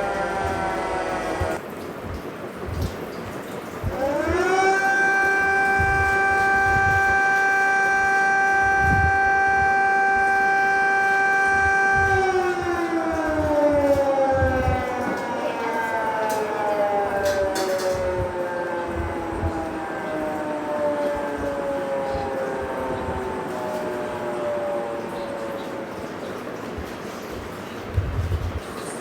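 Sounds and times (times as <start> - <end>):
low rumbles: 0.0 - 1.7, 3.8 - 15.2
outdoor warning siren wailing: 0.0 - 2.9, 3.7 - 29.0.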